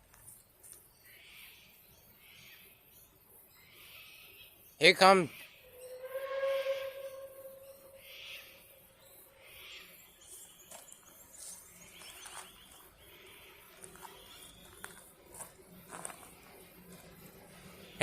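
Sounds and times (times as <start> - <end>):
faint bird chirps: 0.9 - 15.0
steam locomotive whistle: 5.7 - 9.0.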